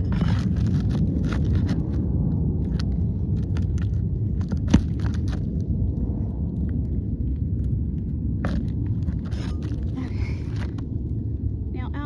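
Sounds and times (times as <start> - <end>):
pry tool scraping shingles: 0.0 - 1.9
wind rumble on microphone: 0.0 - 12.0.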